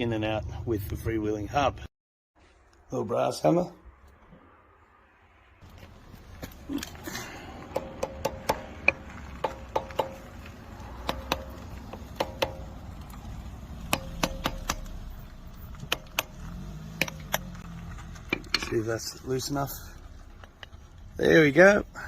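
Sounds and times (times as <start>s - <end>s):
hammer tapping on metal: 7.7s - 10.4s, 11.0s - 12.7s, 13.9s - 14.9s, 15.8s - 16.4s.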